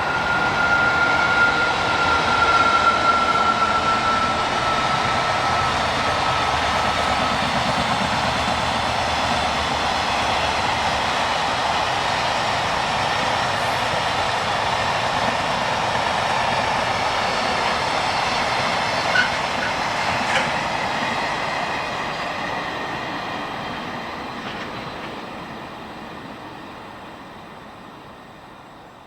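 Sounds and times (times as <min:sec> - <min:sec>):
freight train wagons rolling: 0:17.6 - 0:21.2.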